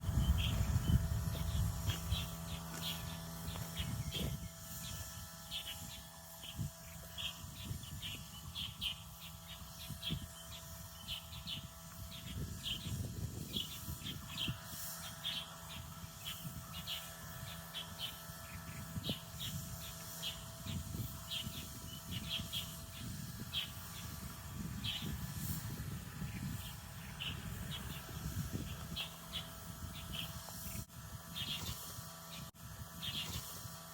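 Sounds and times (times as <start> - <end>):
steady low rumble: 0.0 - 5.2
birds chirping: 0.0 - 33.6.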